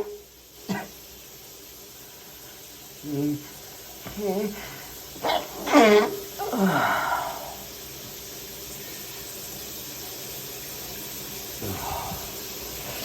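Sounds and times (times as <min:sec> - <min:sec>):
steady steam hiss: 0:00.0 - 0:13.0
person breathing out: 0:06.4 - 0:07.7, 0:11.6 - 0:13.0
person sniffing: 0:11.6 - 0:13.0.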